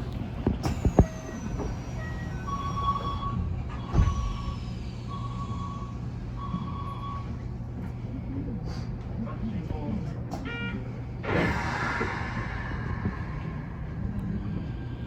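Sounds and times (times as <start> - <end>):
electric train hum: 10.9 - 15.0.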